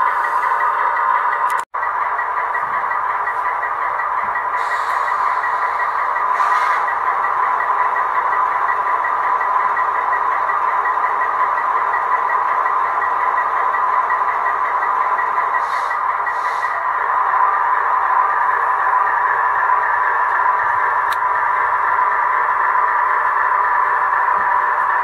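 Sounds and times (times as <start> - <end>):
model locomotive engine sound: 0.0 - 25.0
short hisses: 15.6 - 16.8.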